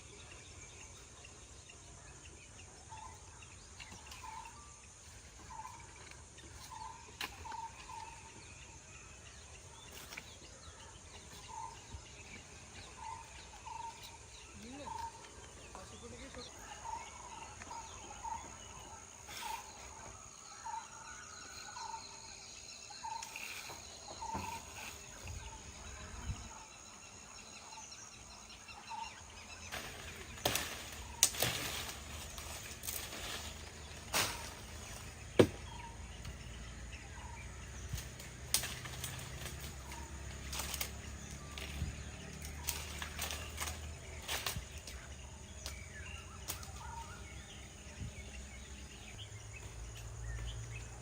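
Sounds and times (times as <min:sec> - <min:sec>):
bird chirping: 0:00.0 - 0:51.0
sharp knocks and cracks: 0:29.7 - 0:36.4, 0:37.9 - 0:39.8.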